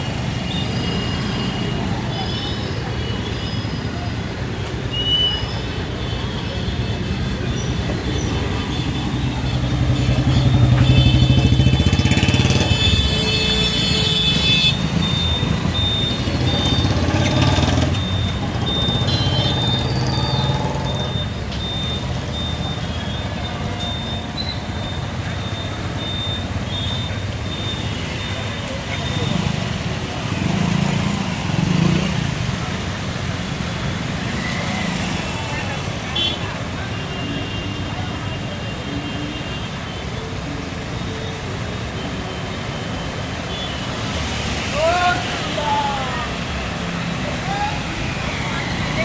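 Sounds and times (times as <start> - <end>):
traffic engines running: 0.0 - 49.0.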